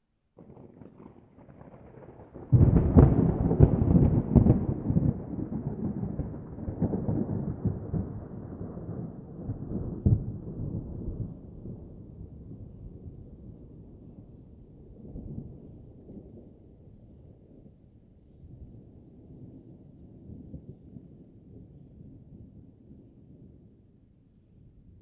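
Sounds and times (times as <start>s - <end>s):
distant thunder rumbling: 0.4s - 16.6s.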